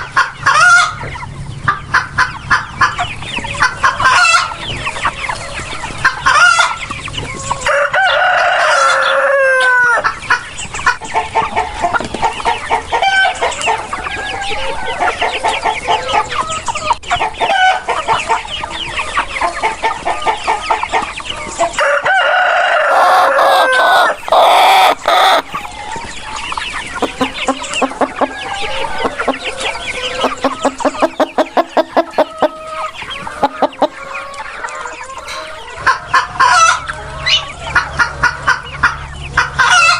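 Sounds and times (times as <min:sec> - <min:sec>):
chickens clucking: 0:00.0 - 0:39.9
rooster crowing: 0:07.6 - 0:10.0, 0:21.8 - 0:25.6, 0:27.0 - 0:35.8.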